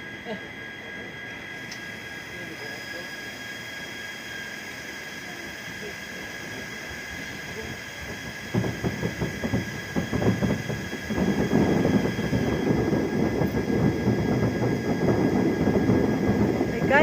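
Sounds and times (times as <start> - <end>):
fireworks cracking and popping: 8.0 - 17.0.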